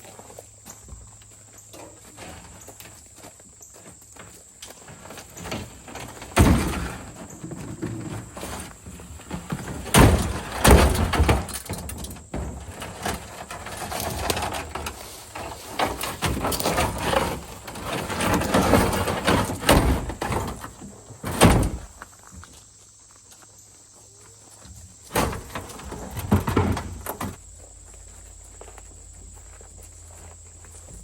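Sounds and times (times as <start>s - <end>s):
scraping and rattling: 4.7s - 22.0s, 25.0s - 27.4s
loud knocks and bangs: 9.8s - 11.5s.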